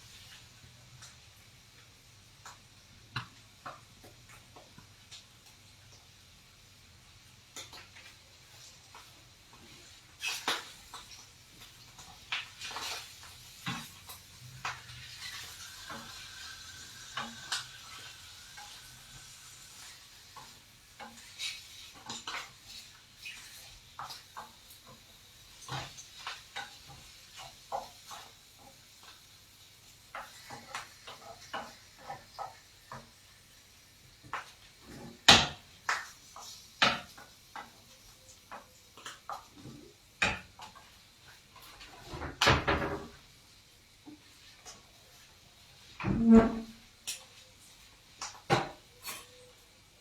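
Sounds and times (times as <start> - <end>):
food sizzling faintly: 0.0 - 42.4.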